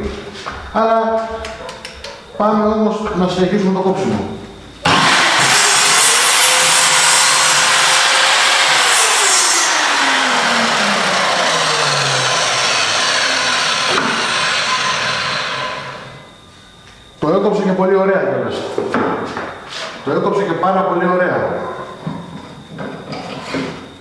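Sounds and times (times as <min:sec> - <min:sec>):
mitre saw cutting wood: 0:04.9 - 0:16.3.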